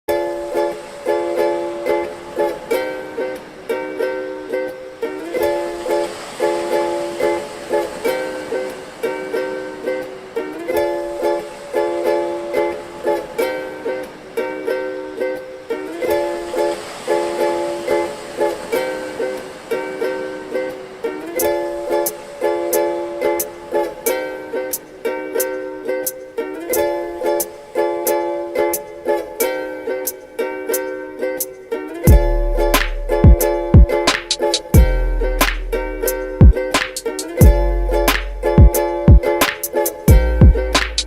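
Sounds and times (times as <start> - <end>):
plucked ukulele chords: 0.1 - 41.0
steady drum beat: 32.1 - 35.6, 36.4 - 41.0.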